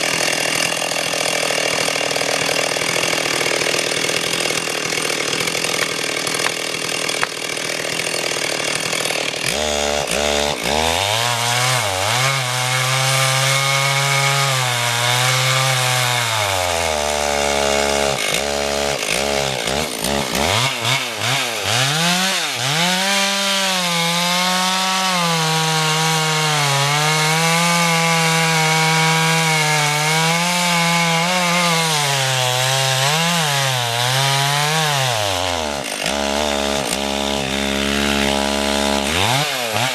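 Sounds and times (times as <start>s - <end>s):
chainsaw cutting into trunk: 0.0s - 39.9s.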